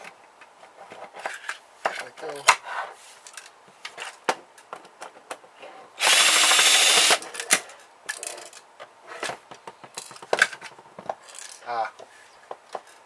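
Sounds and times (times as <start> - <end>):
power drill spinning: 6.0 - 7.2.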